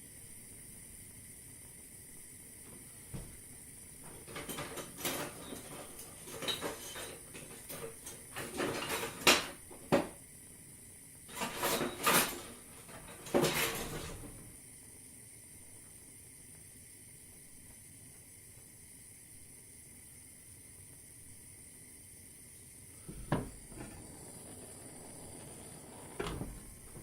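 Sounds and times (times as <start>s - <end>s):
frying hiss: 0.0s - 27.0s
cookware knocks and scrapes: 4.2s - 10.1s, 23.1s - 24.1s.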